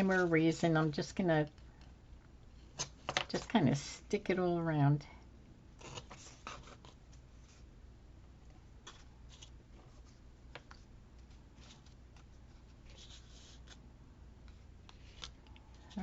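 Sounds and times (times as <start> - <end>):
low room hum: 0.0 - 16.0.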